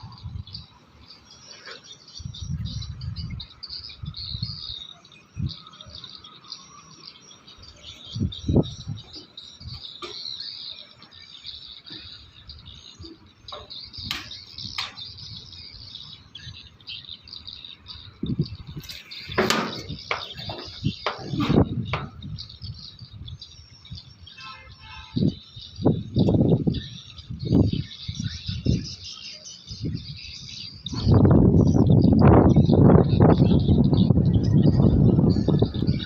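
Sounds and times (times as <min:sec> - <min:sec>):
small birds chirping: 0:00.0 - 0:36.0
handling knocks and thumps: 0:19.3 - 0:22.2.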